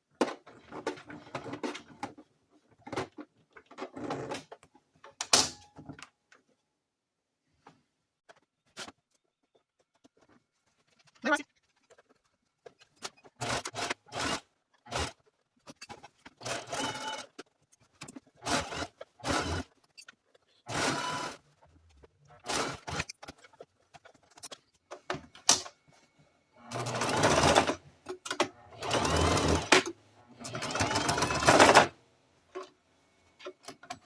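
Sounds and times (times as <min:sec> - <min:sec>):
sewing machine stitching: 0:13.4 - 0:15.2, 0:15.8 - 0:17.4, 0:18.2 - 0:19.8, 0:20.6 - 0:21.5, 0:22.4 - 0:23.4, 0:26.6 - 0:32.0.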